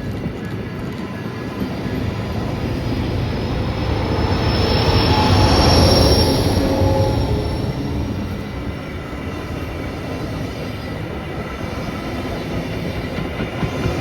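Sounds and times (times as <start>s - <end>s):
train rumbling past: 0.0s - 14.0s
high wheel squeal: 0.9s - 10.0s.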